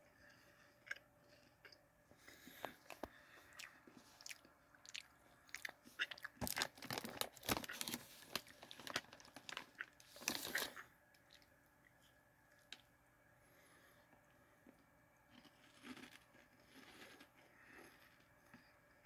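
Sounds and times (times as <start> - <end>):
person crunching cheese curls: 2.4 - 11.4, 14.7 - 18.7.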